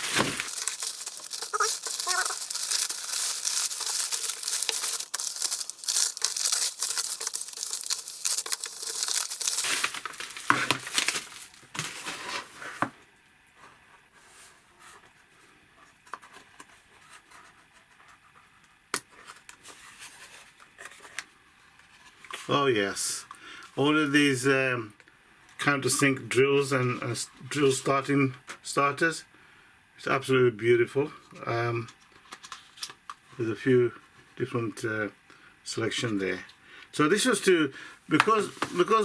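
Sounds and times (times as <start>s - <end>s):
packaging crinkling and tearing: 0.0s - 12.6s.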